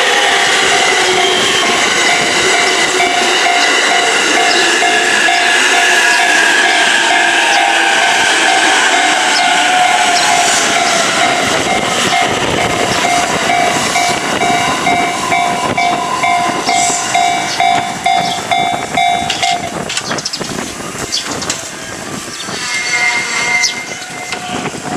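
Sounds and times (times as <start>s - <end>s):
level-crossing warning bell ringing: 0.0s - 20.2s
train wheels clattering and rumbling: 0.0s - 24.9s.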